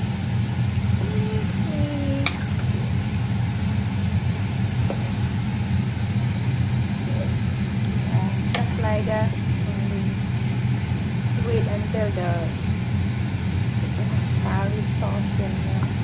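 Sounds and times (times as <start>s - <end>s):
machine droning hum: 0.0s - 16.0s.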